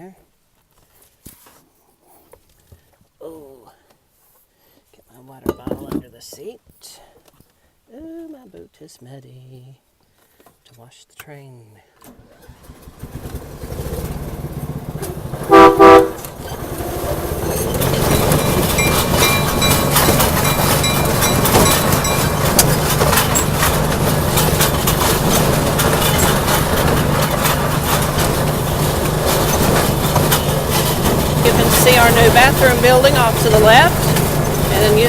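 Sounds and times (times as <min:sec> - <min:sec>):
small train engine running: 0:12.3 - 0:35.0
train cars rattling: 0:14.1 - 0:35.0
train horn toots: 0:15.4 - 0:16.3.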